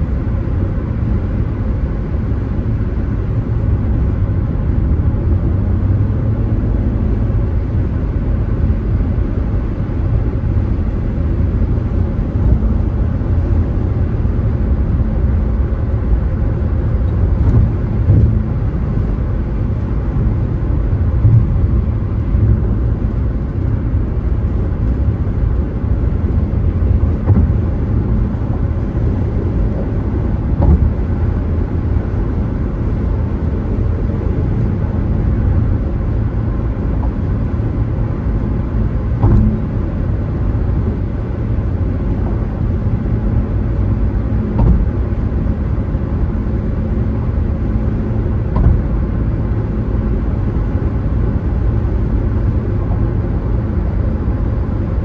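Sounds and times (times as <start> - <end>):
car road and engine rumble: 0.0 - 55.0
short thumps: 11.9 - 13.3, 16.0 - 31.3, 38.3 - 42.5, 44.6 - 45.3, 48.5 - 49.2.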